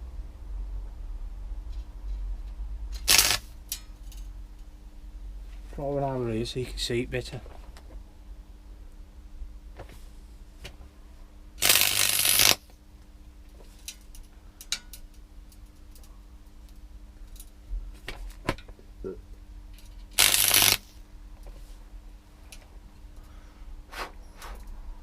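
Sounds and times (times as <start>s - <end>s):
steady low hum: 0.0s - 25.0s
arc welder crackling sizzle: 2.9s - 4.7s, 11.6s - 17.5s, 19.0s - 21.5s.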